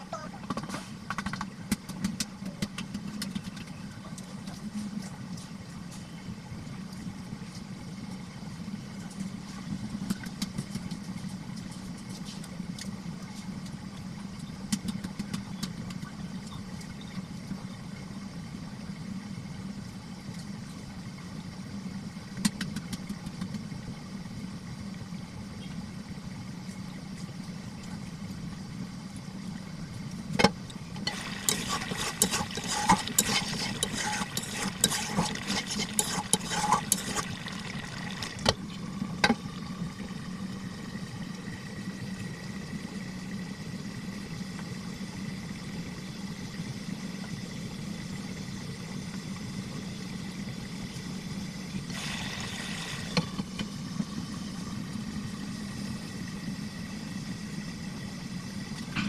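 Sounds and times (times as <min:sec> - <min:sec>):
low motor hum: 0:00.0 - 0:59.0
dense crackling and clatter: 0:31.0 - 0:39.2.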